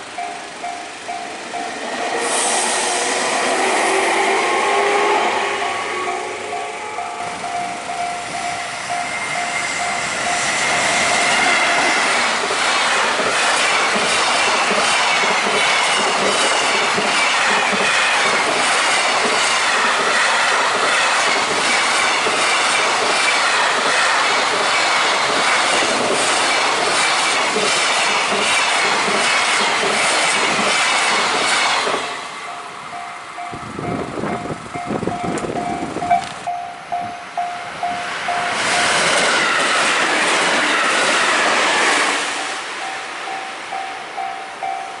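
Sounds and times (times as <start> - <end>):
train wheels clacking over rails: 6.2 - 45.0
wind on microphone: 33.5 - 37.2.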